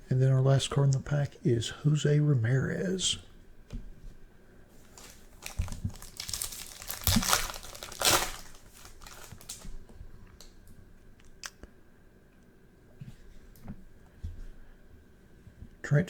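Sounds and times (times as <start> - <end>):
foil wrapper tearing and crinkling: 4.9 - 9.7.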